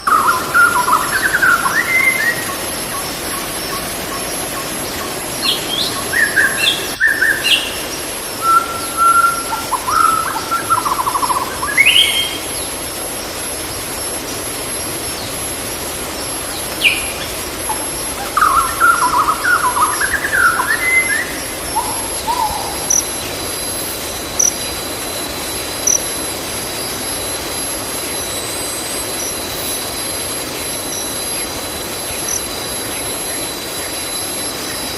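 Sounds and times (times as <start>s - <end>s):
birds chirping and calling: 0.0s - 12.6s, 16.5s - 23.4s
forest stream flowing: 0.0s - 34.9s.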